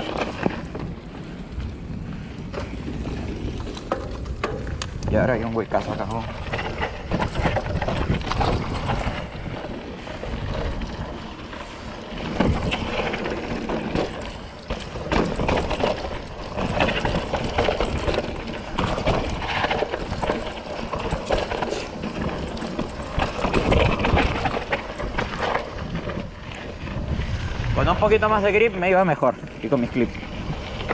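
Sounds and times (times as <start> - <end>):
mountain bike rattling over rough trail: 0.0 - 30.9
bike knocks and bumps: 12.2 - 26.6.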